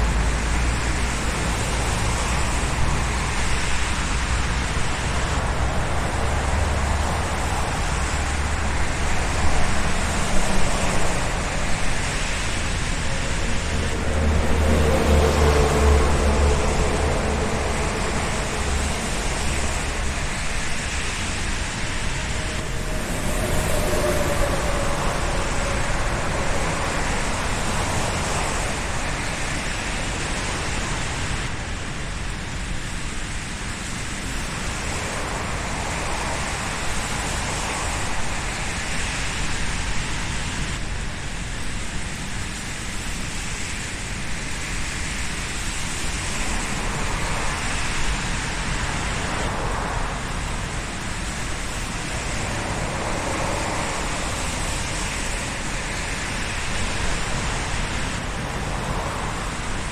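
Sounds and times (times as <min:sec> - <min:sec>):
road traffic passing: 0:00.0 - 0:59.9.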